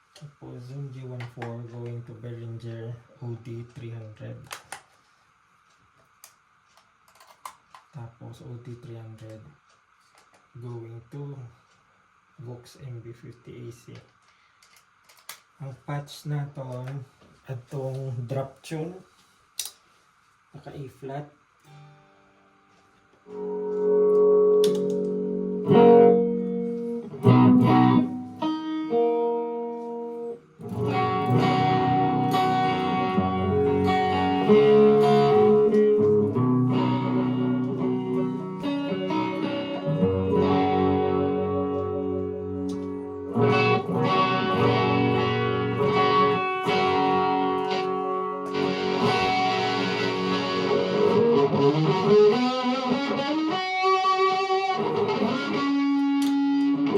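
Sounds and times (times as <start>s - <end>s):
distorted electric guitar: 21.7s - 56.9s.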